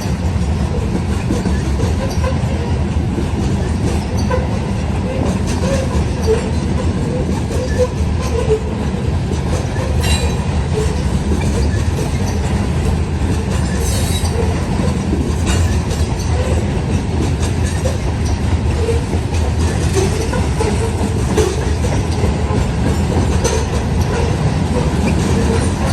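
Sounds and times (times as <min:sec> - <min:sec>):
train wheel squeal: 0:00.0 - 0:02.8, 0:03.4 - 0:25.9
freight train rumbling past: 0:00.0 - 0:25.9
sharp metal clanks: 0:10.0 - 0:10.5.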